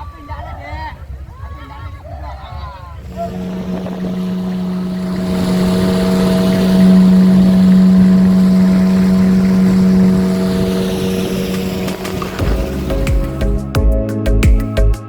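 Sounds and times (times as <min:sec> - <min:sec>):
boat engine droning: 0:02.8 - 0:13.8.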